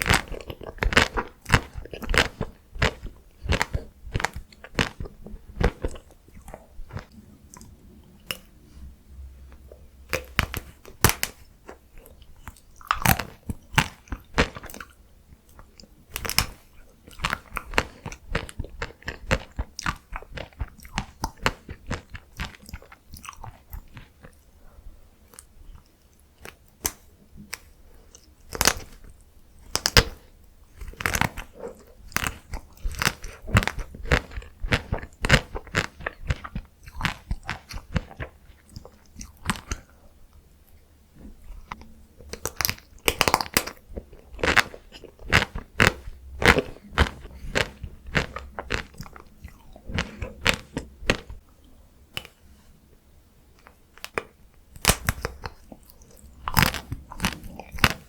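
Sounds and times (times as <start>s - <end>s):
quiet chewing: 0.0s - 8.9s, 9.5s - 58.0s
chocolate shell crunching: 25.3s - 39.9s, 41.5s - 51.4s, 53.6s - 58.0s.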